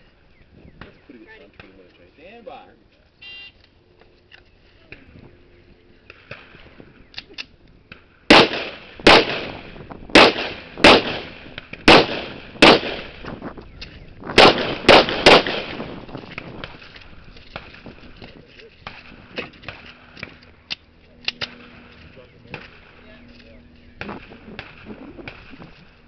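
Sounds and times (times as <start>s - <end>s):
gunshots with echo: 8.3s - 13.2s, 14.4s - 16.0s.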